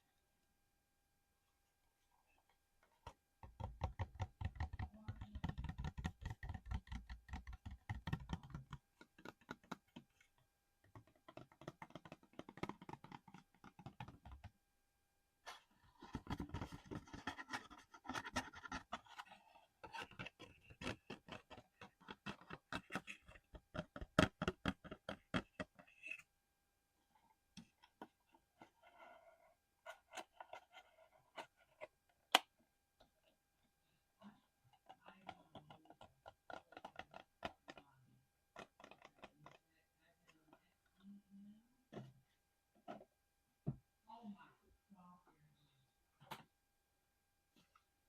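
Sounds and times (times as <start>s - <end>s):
fingernails tapping and scratching: 3.4s - 10.3s, 10.9s - 14.5s, 16.0s - 26.2s, 34.8s - 37.8s.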